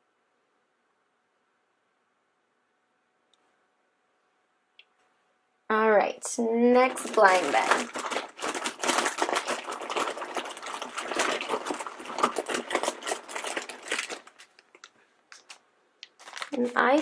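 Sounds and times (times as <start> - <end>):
packets rustling and clicking: 6.8 - 17.0.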